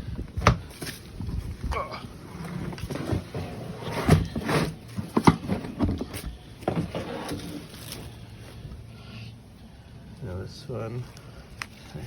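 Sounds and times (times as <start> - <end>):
wind rumble on microphone: 0.0 - 2.3
knocks and scrapes on compost bin: 2.3 - 7.9.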